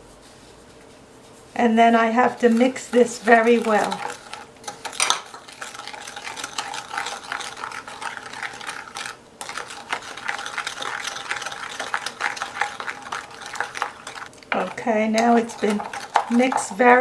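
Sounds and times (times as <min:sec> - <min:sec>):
hand-cranked egg beater whirring: 0:02.2 - 0:17.0.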